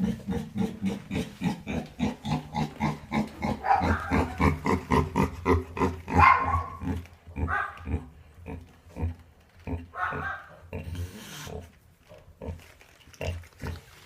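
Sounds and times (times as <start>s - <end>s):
pig grunting: 0.0s - 11.8s.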